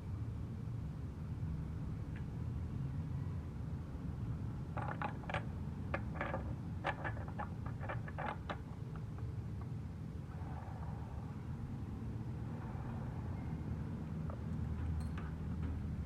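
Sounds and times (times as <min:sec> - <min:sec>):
metallic clicks and clinks: 0:14.8 - 0:16.0.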